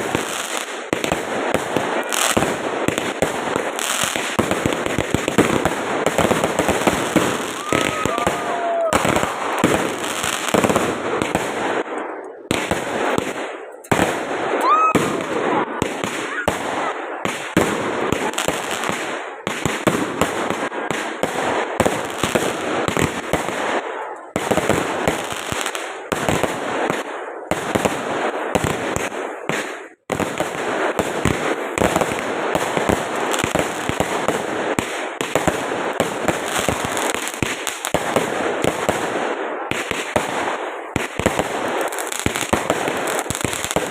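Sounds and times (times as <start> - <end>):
fireworks popping and crackling: 0.0 - 43.9
rising firework whistle: 7.5 - 9.7, 14.6 - 15.4.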